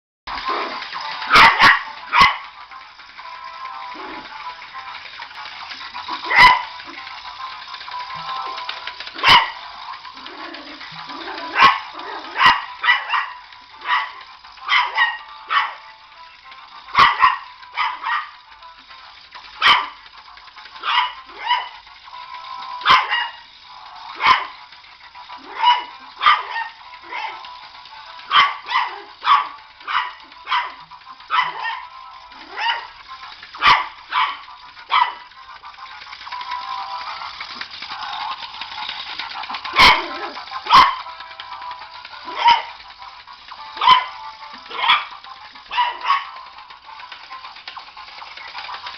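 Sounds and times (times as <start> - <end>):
high-pitched background hum: 0.5 - 48.9
small dog yapping: 6.2 - 6.7, 32.5 - 32.9, 39.8 - 41.0, 45.7 - 46.3.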